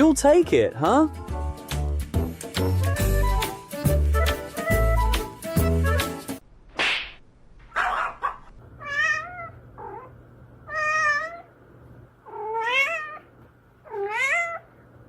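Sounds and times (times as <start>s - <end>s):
cat meowing: 8.8s - 11.5s, 12.3s - 14.7s.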